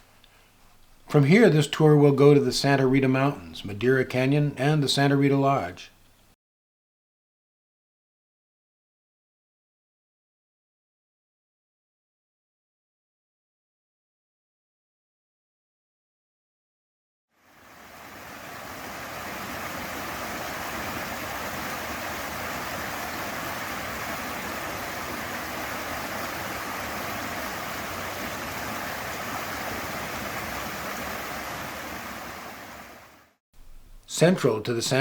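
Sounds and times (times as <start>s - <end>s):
steady rushing noise: 17.5s - 33.2s.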